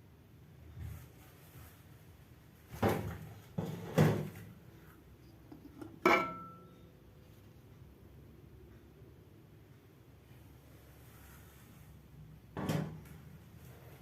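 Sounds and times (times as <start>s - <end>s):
cookware clattering: 5.6s - 6.7s
metallic ringing knock: 6.0s - 6.8s.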